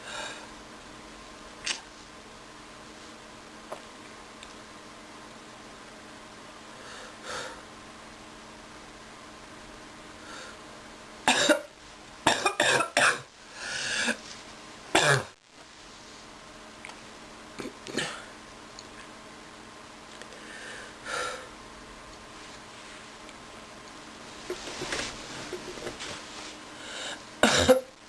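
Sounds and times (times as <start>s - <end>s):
person coughing harshly: 11.3s - 11.7s, 12.3s - 13.3s, 15.0s - 15.4s, 17.6s - 18.3s, 27.4s - 28.0s.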